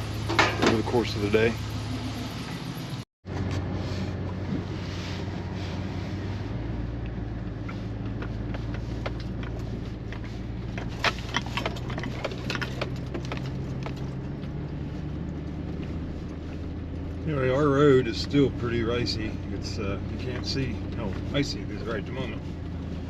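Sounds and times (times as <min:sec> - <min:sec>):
truck engine and road hum: 0:00.0 - 0:23.0
sharp knocks and rattles: 0:00.2 - 0:01.1, 0:08.0 - 0:15.6.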